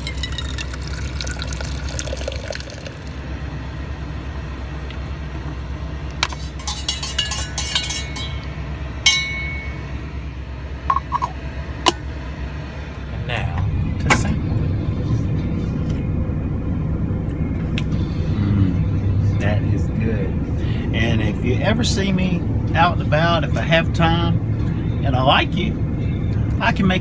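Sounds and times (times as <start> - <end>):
glass clinks and taps: 0.0 - 0.7, 6.3 - 8.5, 9.1 - 9.8, 10.9 - 11.3
liquid pouring into glass: 0.0 - 3.2
low engine hum: 0.0 - 27.0.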